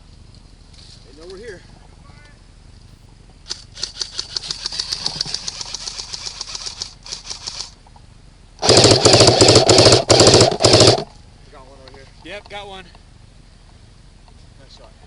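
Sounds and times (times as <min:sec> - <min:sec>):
airsoft guns firing full auto: 0:03.4 - 0:07.8, 0:08.6 - 0:11.1.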